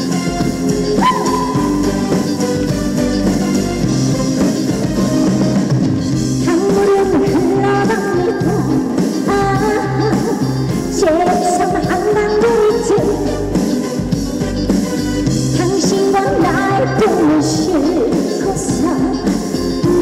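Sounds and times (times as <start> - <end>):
lead melody of held notes: 0.0 - 7.6
band playing over sound system: 0.0 - 20.0.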